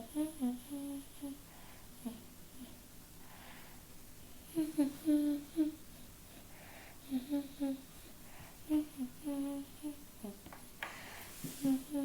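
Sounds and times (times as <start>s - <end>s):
girl humming a tune: 0.0s - 1.4s, 2.0s - 2.8s, 4.4s - 5.9s, 7.0s - 7.9s, 8.6s - 10.4s, 11.5s - 12.0s.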